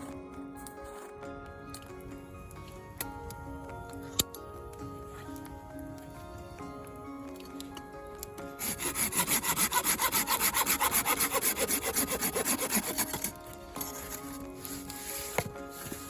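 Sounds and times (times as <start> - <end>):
hand saw cutting wood: 8.6 - 16.0.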